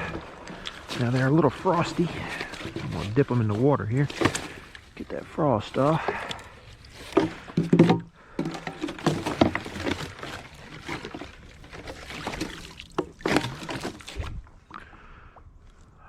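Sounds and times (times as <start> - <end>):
decoys splashing in water: 0.0 - 5.2.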